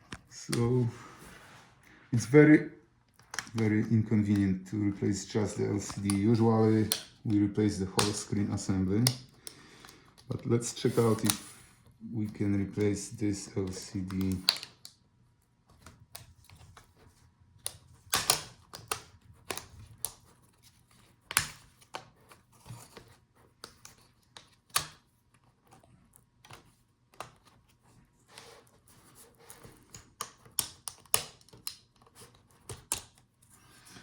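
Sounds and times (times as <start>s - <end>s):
plastic cover clicking and snapping: 3.1s - 3.7s, 5.4s - 10.5s, 11.1s - 11.5s, 13.6s - 15.0s, 17.6s - 20.3s, 29.6s - 33.2s.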